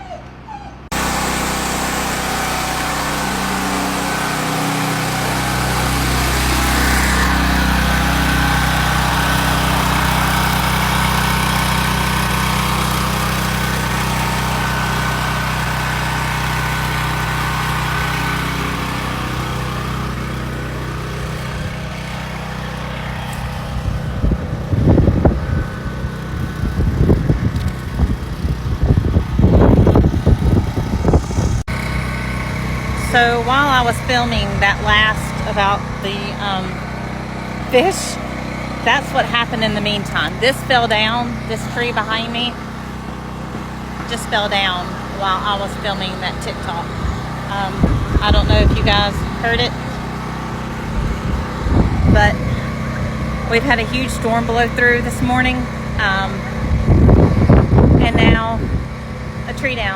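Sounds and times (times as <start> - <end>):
generator engine running: 0.0 - 59.9
wind buffeting microphone: 23.7 - 31.7, 46.9 - 49.6, 50.8 - 53.3, 56.0 - 59.0.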